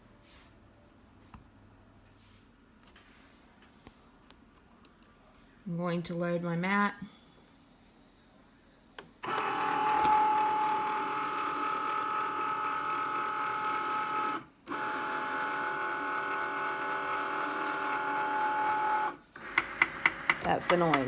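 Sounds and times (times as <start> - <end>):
cutting machine motors whining: 9.2 - 21.0.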